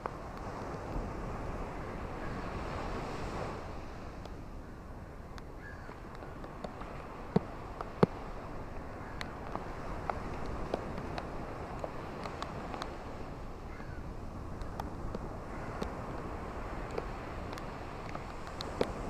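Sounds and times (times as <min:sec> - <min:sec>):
ocean surf: 0:00.0 - 0:19.0
sharp ticks and taps: 0:05.3 - 0:08.2, 0:09.1 - 0:13.0, 0:14.6 - 0:16.0, 0:16.8 - 0:19.0.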